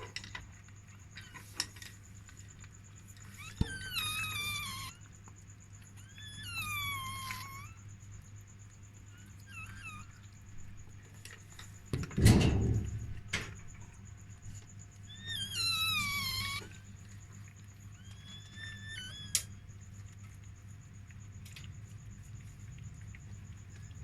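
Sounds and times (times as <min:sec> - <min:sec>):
puppy squealing: 0:03.3 - 0:05.0, 0:06.0 - 0:07.8, 0:09.2 - 0:10.3, 0:15.1 - 0:16.9, 0:17.9 - 0:19.6
loud bump and rustle: 0:11.9 - 0:13.9.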